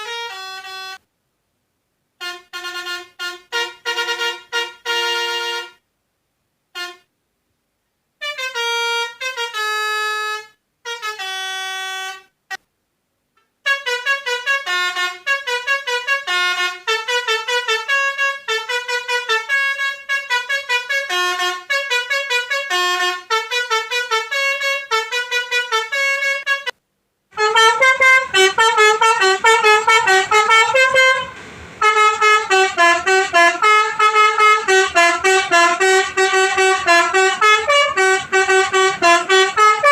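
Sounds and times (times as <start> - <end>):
reedy toy keyboard notes: 2.2 - 5.8, 13.7 - 26.7, 27.4 - 39.9.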